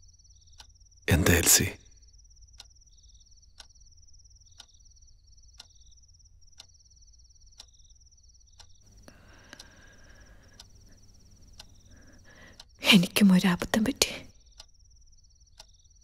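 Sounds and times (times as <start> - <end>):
crickets chirping: 0.0 - 16.0
clock ticking: 1.1 - 1.8, 8.6 - 14.7.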